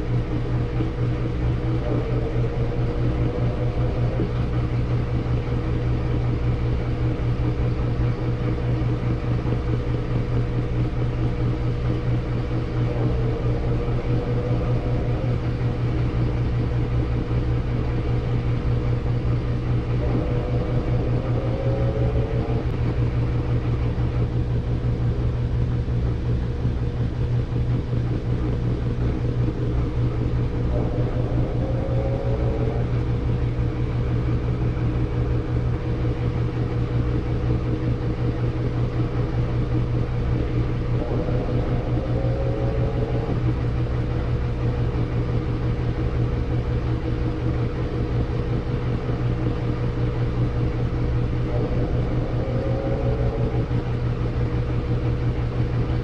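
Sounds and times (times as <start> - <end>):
washing machine motor hum: 0.0 - 56.0
high gliding whine: 12.6 - 16.8, 19.3 - 23.0, 29.8 - 34.1, 40.3 - 44.2, 51.2 - 55.2.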